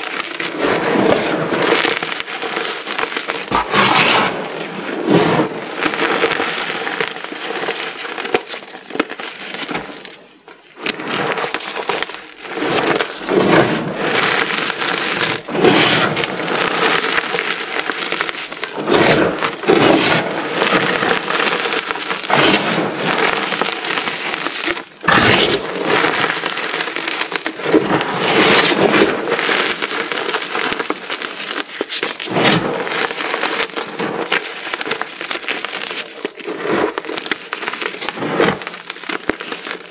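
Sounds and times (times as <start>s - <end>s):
chalk pieces crunching: 3.4s - 5.4s, 11.0s - 34.0s.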